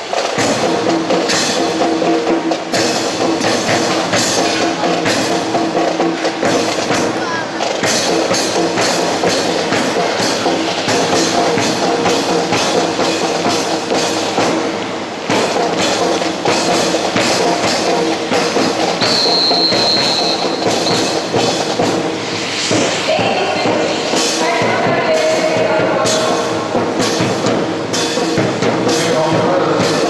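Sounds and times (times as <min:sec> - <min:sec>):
music with steady drum beat: 0:00.0 - 0:30.0
high steady tone: 0:19.0 - 0:26.6.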